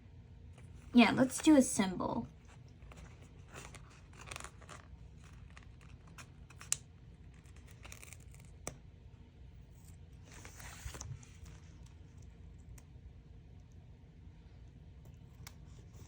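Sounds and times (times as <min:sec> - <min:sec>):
paper rustling and crinkling: 0:02.5 - 0:08.7, 0:10.2 - 0:12.0.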